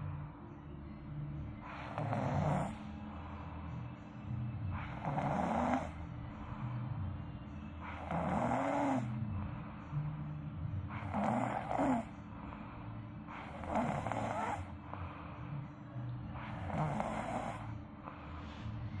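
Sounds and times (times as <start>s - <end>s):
child snoring: 1.7s - 2.8s, 4.8s - 6.0s, 7.9s - 9.2s, 10.9s - 12.2s, 13.4s - 14.7s, 16.4s - 17.8s.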